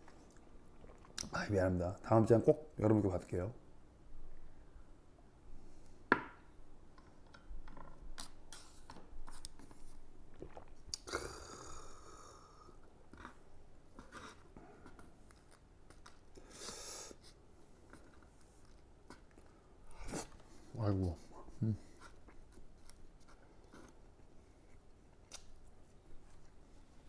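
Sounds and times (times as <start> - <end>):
person chewing and eating: 0.0 - 1.3, 7.2 - 20.7, 21.5 - 25.6.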